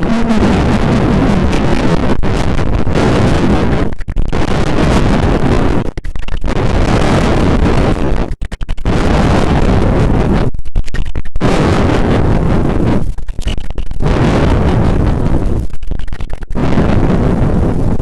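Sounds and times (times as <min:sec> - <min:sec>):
wind buffeting microphone: 0:00.0 - 0:05.8, 0:08.9 - 0:10.5, 0:11.4 - 0:13.1, 0:14.0 - 0:15.6, 0:16.6 - 0:18.0.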